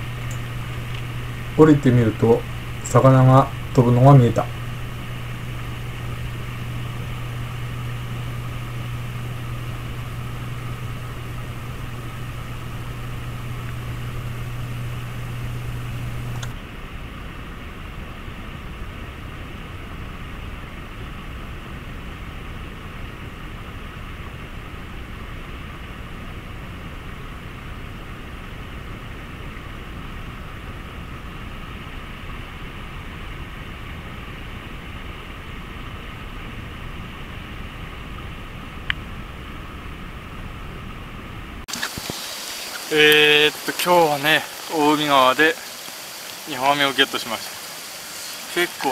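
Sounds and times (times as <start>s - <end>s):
low hum: 0.0s - 46.4s
stream water rushing: 41.7s - 48.9s.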